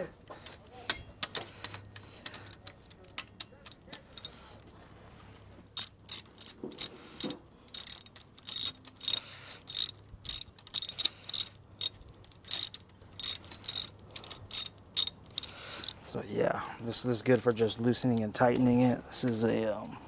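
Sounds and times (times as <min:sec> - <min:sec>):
ratchet tool clicking: 0:01.2 - 0:04.4, 0:05.8 - 0:16.0.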